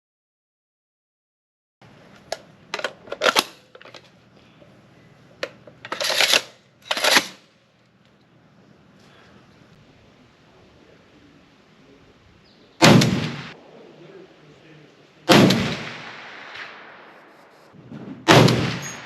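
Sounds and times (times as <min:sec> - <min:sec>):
rifle metallic clicks and clacks: 0:02.2 - 0:04.1, 0:05.4 - 0:07.4, 0:18.3 - 0:19.0.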